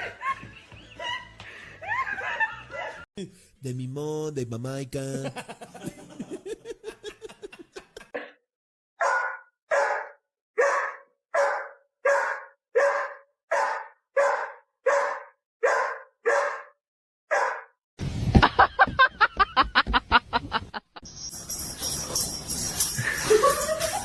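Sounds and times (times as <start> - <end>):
dog barking: 9.0 - 17.7.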